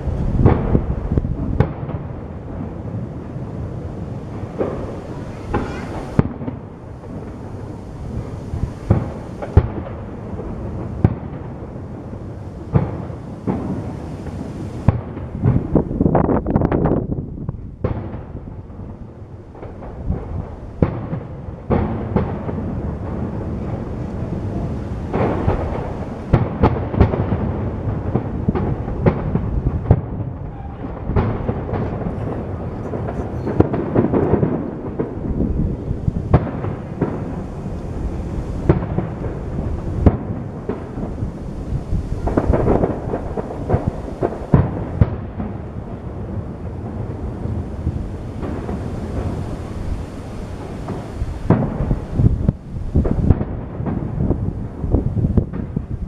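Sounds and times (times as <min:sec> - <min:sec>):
firework shells bursting: 0:04.2 - 0:16.7, 0:19.5 - 0:45.8.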